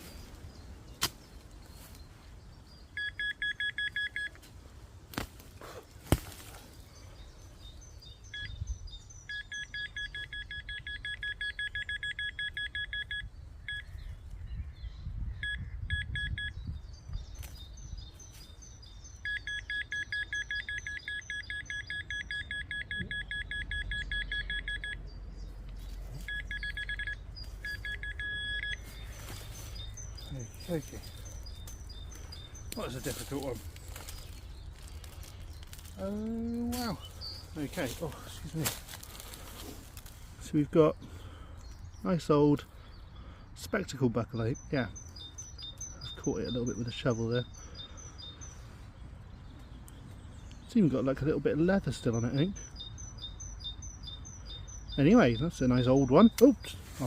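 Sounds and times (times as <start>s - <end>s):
metal detector beeping: 3.0s - 4.4s, 8.3s - 8.6s, 9.3s - 14.0s, 15.4s - 16.6s, 19.2s - 25.0s, 26.1s - 33.5s.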